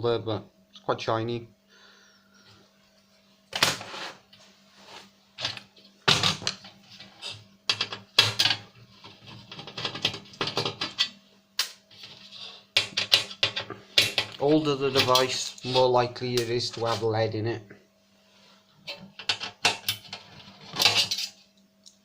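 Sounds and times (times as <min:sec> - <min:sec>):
faint steady hum: 0:00.0 - 0:22.0
parts clicking and clattering: 0:07.7 - 0:15.6, 0:18.9 - 0:22.0.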